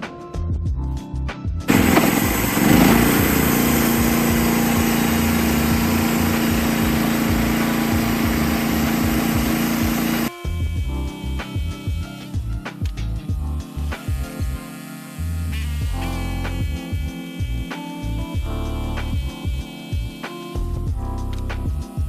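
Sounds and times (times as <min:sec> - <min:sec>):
small gasoline engine running: 0:01.7 - 0:10.3, 0:13.8 - 0:17.5.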